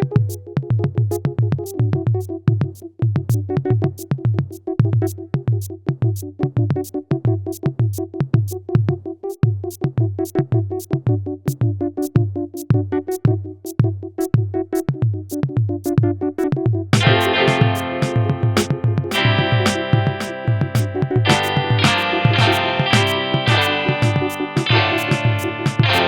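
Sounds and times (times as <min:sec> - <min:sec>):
drum machine beat: 0:00.0 - 0:10.9, 0:11.5 - 0:26.0
sustained synthesizer chord: 0:17.0 - 0:26.0.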